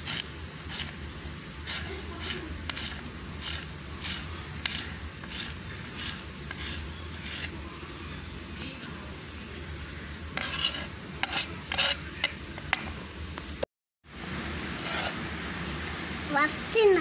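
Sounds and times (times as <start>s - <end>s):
blade slicing bean pods: 1.7s - 7.5s.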